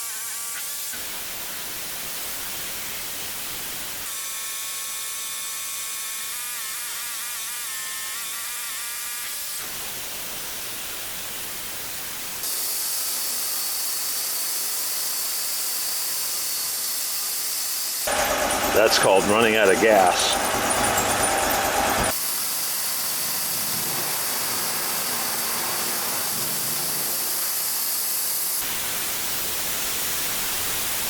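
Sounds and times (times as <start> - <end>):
band sawmill cutting log: 16.1 - 29.4.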